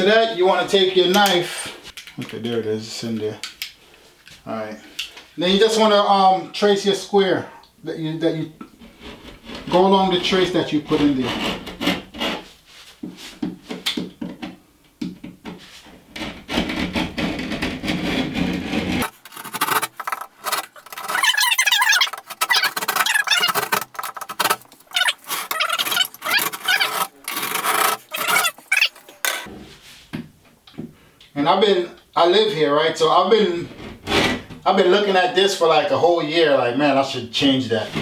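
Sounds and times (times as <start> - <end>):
utility knife scoring drywall: 8.9 - 12.6, 16.1 - 29.5.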